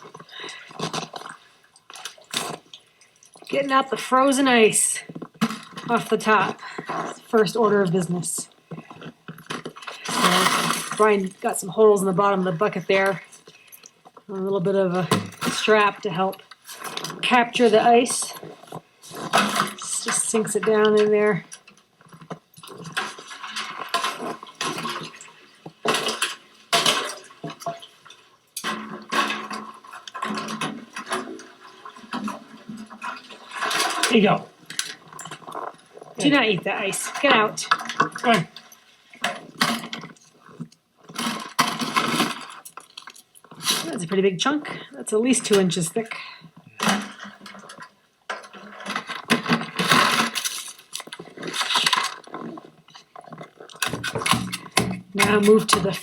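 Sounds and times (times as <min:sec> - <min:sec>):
ice chunks scraping and clattering: 0:03.6 - 0:11.7, 0:41.1 - 0:44.0, 0:48.4 - 0:56.0
water sloshing: 0:53.3 - 0:56.0.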